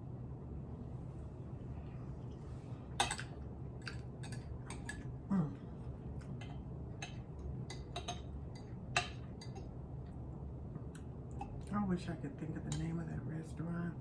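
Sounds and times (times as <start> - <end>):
low background hum: 0.0 - 14.0
cutlery clicking on a plate: 3.0 - 5.0, 6.3 - 9.7.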